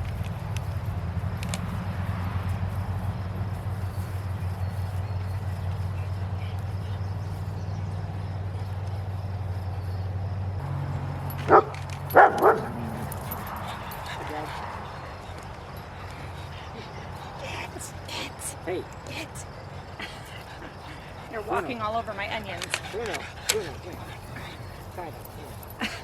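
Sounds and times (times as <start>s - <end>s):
low engine hum: 0.0s - 26.0s
dog barking: 11.3s - 15.0s.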